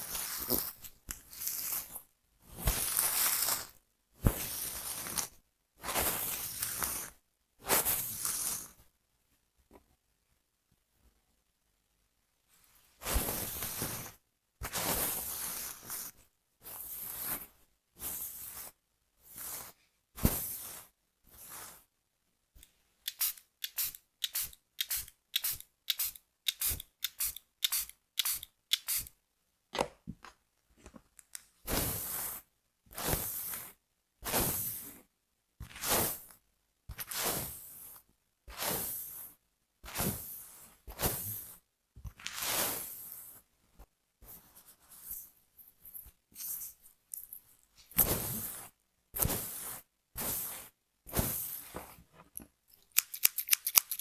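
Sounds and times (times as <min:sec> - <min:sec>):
scissors cutting hair: 0:23.0 - 0:29.1, 0:52.9 - 0:54.0.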